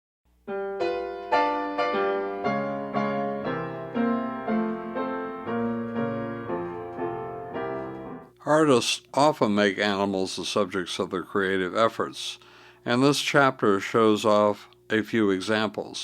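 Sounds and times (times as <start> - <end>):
solo piano playing slow tune: 0.5 - 8.3.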